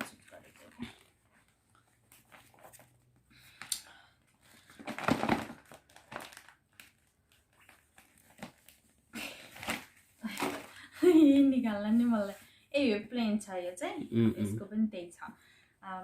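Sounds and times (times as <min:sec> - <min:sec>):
packaging crinkling and rustling: 0:04.5 - 0:10.8.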